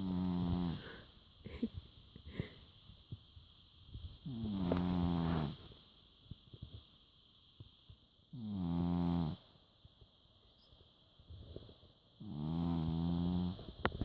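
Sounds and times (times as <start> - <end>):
cat snoring: 0.0 - 1.0, 4.2 - 5.6, 8.3 - 9.4, 12.2 - 13.7.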